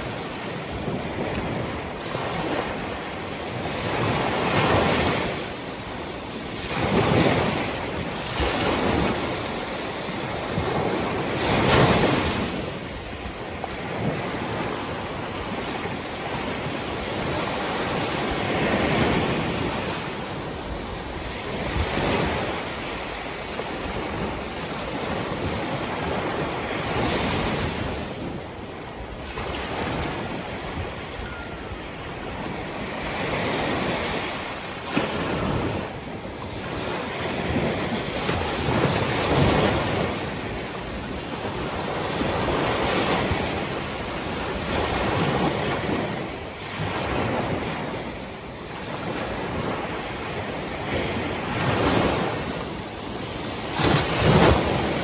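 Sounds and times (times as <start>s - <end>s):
waves breaking on beach: 0.0s - 55.0s
wind buffeting microphone: 0.0s - 55.0s.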